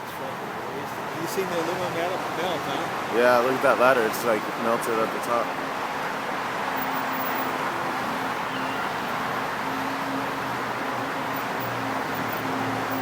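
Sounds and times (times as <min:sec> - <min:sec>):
road traffic noise: 0:00.0 - 0:13.0.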